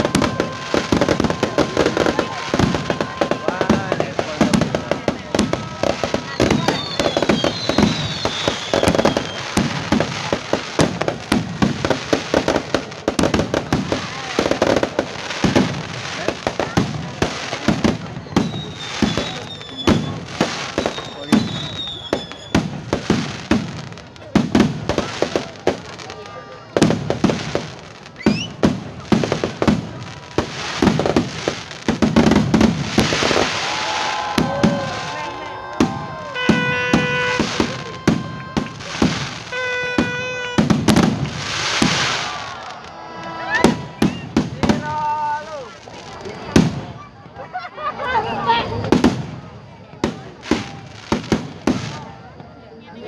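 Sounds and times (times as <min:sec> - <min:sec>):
descending firework whistle: 0:00.0 - 0:10.5, 0:17.8 - 0:23.8, 0:24.8 - 0:47.4
fireworks bangs and pops: 0:00.0 - 0:47.6, 0:48.7 - 0:52.8.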